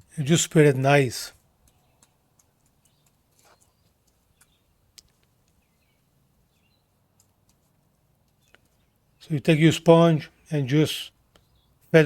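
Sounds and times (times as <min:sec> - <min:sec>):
faint clicks: 0:01.3 - 0:05.6, 0:07.1 - 0:08.8
faint bird chirps: 0:05.5 - 0:07.3, 0:11.3 - 0:11.9.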